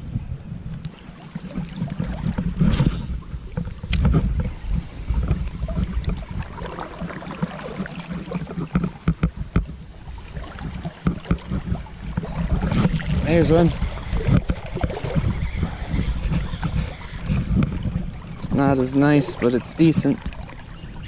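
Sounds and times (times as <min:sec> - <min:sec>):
wind buffeting microphone: 0:00.0 - 0:21.0
river water splashing: 0:00.9 - 0:21.0.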